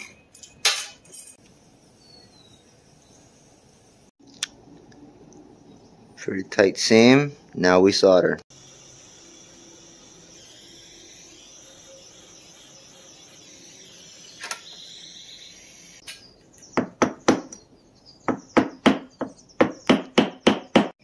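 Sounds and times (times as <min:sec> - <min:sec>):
torch flame hissing: 0:08.5 - 0:16.0.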